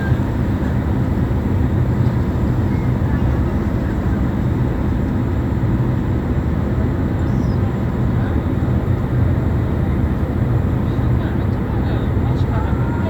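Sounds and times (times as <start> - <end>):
boat engine droning: 0.0 - 13.0.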